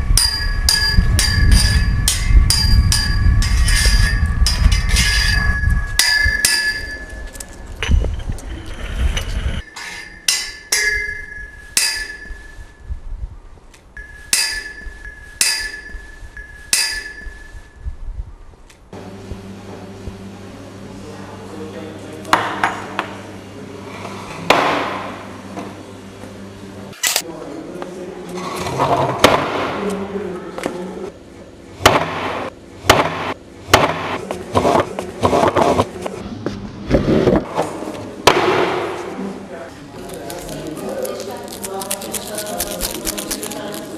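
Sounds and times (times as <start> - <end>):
low machine hum: 0.0 - 28.8
ringing metallic strikes: 0.1 - 7.4, 9.7 - 12.8, 14.0 - 17.8
scraping and rattling: 1.3 - 12.6.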